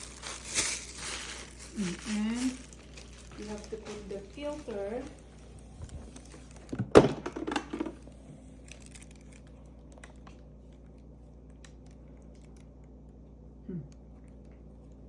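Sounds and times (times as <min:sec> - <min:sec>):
coffee maker parts knocking: 0:06.7 - 0:08.0.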